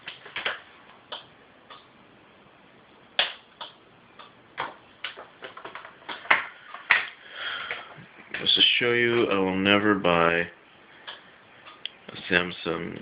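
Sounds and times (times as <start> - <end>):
tv clicking: 0.0 - 1.9, 3.2 - 8.5, 11.0 - 12.2.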